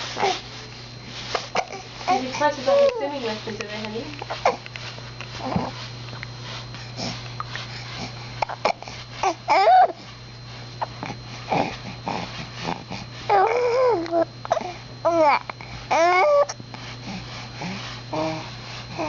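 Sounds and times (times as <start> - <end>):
steady low hum: 0.0 - 19.0
baby babbling: 13.3 - 16.6.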